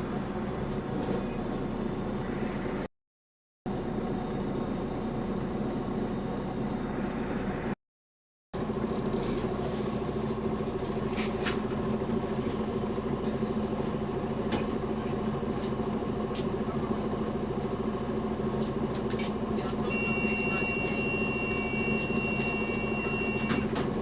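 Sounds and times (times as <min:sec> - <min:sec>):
bus engine droning: 0:00.0 - 0:02.9, 0:03.7 - 0:07.8, 0:08.6 - 0:24.0
squeaks and rattles: 0:10.7 - 0:12.6.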